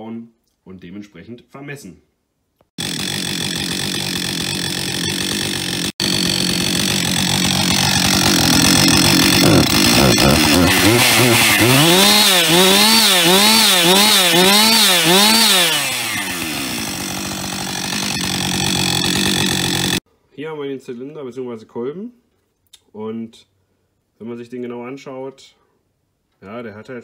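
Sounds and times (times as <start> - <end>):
chainsaw engine idling and revving: 2.8 - 20.0.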